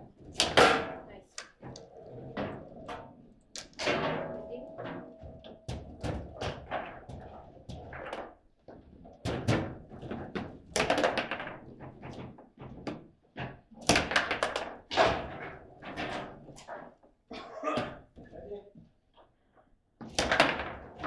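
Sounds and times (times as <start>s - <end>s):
table football knocks and thuds: 20.0s - 21.0s.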